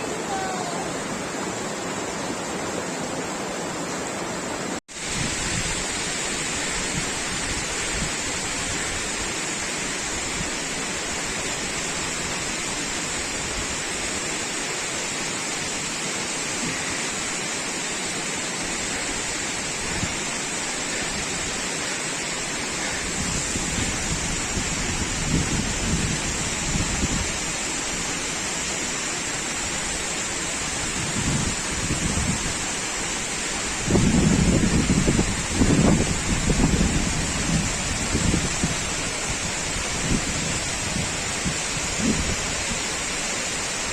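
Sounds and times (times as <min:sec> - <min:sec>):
waterfall roaring: 0:00.0 - 0:43.9
wind buffeting microphone: 0:23.0 - 0:27.4, 0:30.7 - 0:32.8, 0:33.6 - 0:43.1.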